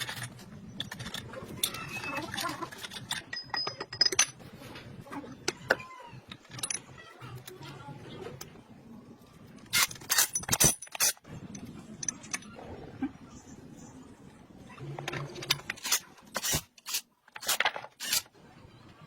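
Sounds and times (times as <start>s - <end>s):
sharp clinks and knocks: 0.0s - 4.5s.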